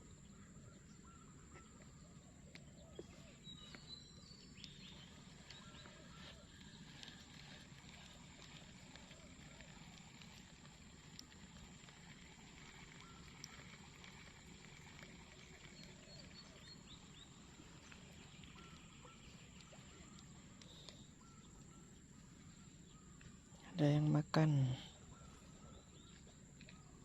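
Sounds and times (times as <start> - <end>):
faint ticks: 4.6 - 21.8, 26.0 - 26.9.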